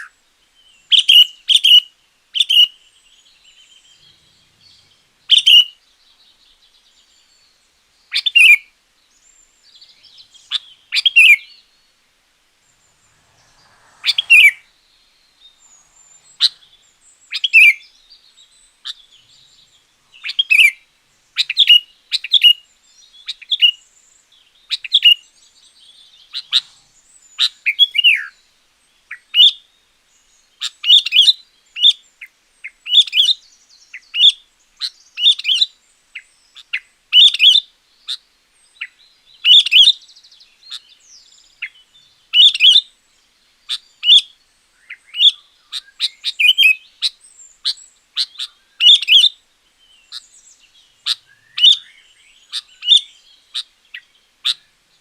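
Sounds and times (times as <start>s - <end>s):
bulbul singing: 0.0s - 28.4s, 43.7s - 55.0s.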